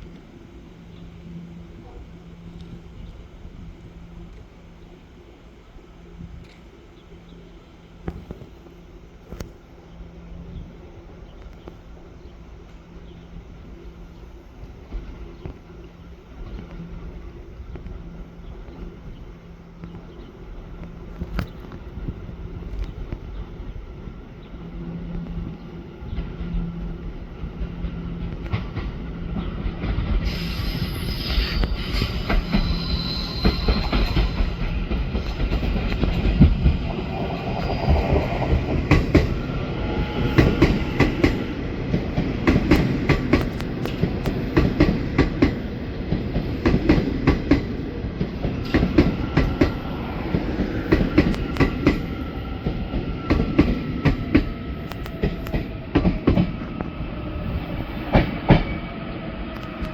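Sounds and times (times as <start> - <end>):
hiss of wheel on rail: 29.8 - 58.8
wheels clacking over rail joints: 31.6 - 56.7.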